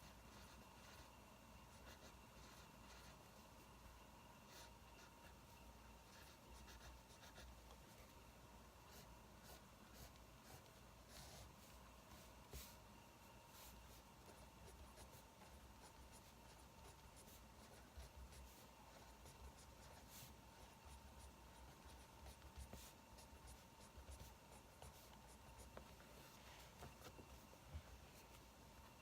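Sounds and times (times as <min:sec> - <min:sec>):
thin steady hum: 0:00.0 - 0:29.0
pen writing on paper: 0:00.3 - 0:01.1, 0:01.7 - 0:03.2, 0:06.1 - 0:07.5, 0:13.6 - 0:25.8.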